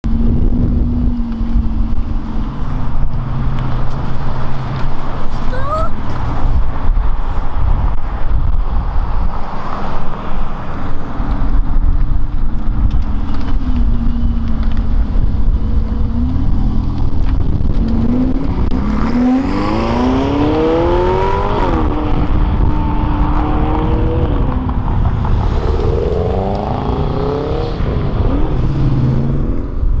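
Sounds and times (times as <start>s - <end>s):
car engine accelerating: 12.3s - 30.0s.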